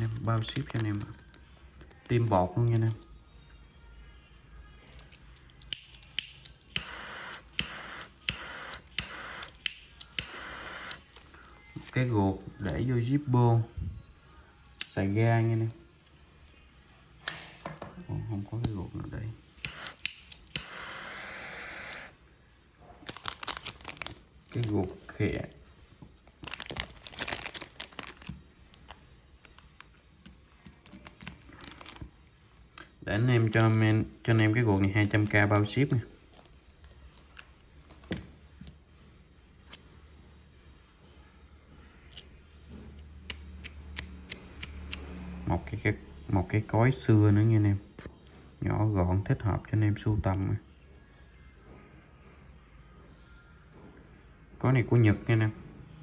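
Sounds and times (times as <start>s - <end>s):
lighter flint wheel clicks: 5.0s - 11.0s, 19.6s - 20.8s, 43.3s - 45.3s
lighter rasping hiss: 5.7s - 11.0s, 19.6s - 22.2s
wrapping rustling and crackling: 23.0s - 32.7s.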